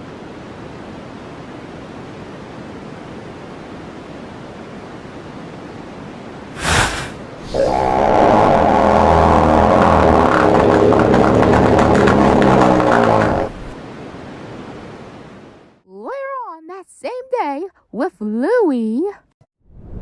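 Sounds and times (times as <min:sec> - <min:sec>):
short loud blast: 0:06.6 - 0:07.2
buzzing cartoon fart sound: 0:06.6 - 0:13.7.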